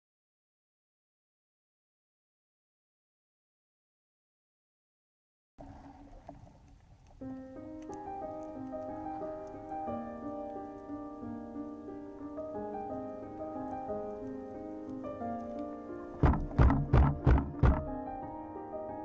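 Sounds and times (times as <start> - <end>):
low hiss: 5.6 - 16.2
slow keyboard melody: 7.2 - 19.0.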